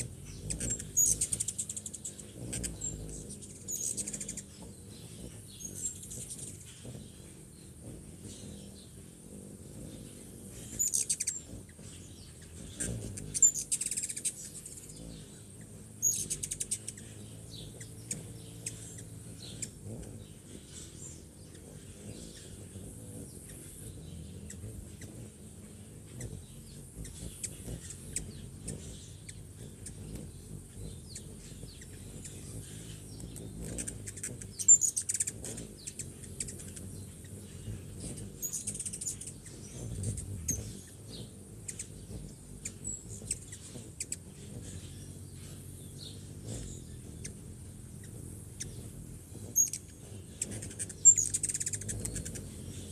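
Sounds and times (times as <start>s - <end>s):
hummingbirds chirping: 0.0s - 52.9s.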